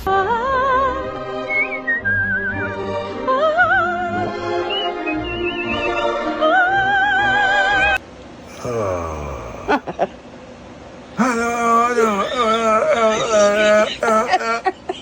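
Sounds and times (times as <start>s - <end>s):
sliding voice-like sound: 11.2s - 14.3s.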